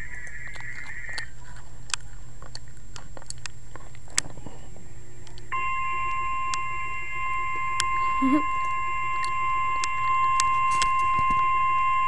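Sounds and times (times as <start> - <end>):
radio static with clicks: 0.0 - 6.7, 7.8 - 11.6
steady alarm tone: 5.5 - 12.0.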